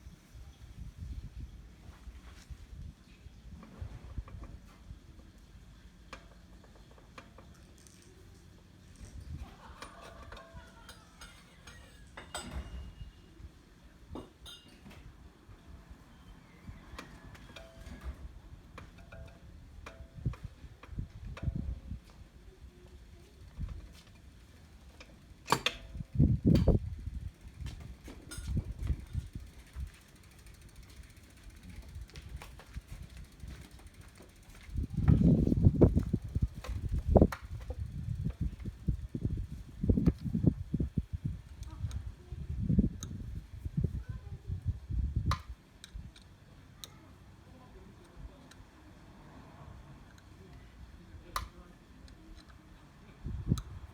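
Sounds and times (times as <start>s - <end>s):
metal tools clinking: 9.6s - 13.0s.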